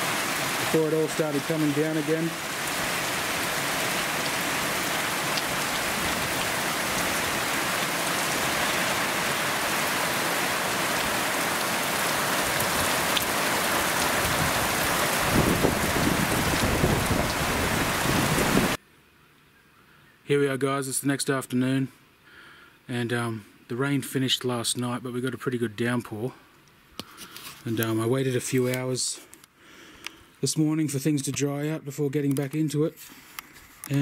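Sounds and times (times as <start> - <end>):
heavy rain on a metal roof: 0.0 - 18.8.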